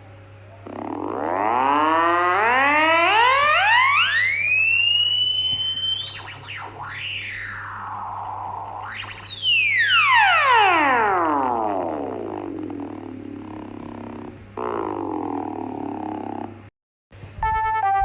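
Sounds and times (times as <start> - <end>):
siren-like electronic alarm tone: 0.6 - 16.5.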